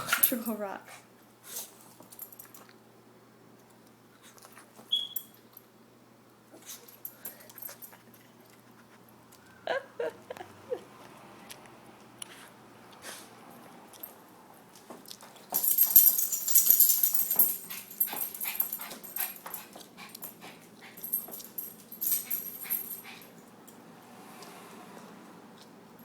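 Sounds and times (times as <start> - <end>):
dog rustling and clicking: 14.0 - 23.5.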